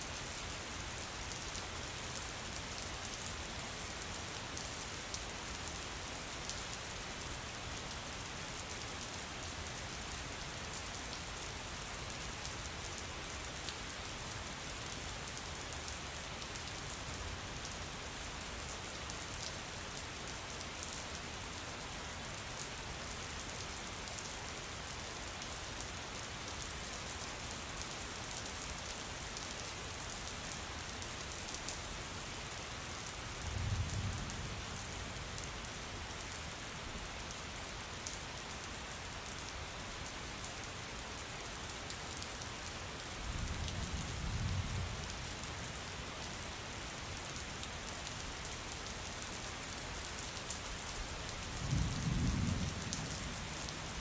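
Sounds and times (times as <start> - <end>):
steady rain falling: 0.0 - 54.0
low thunder rumbles: 51.6 - 54.0.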